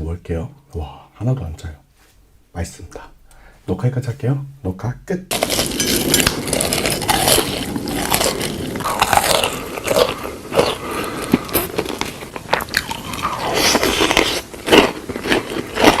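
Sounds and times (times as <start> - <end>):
wet chewing and crunching: 5.3 - 16.0.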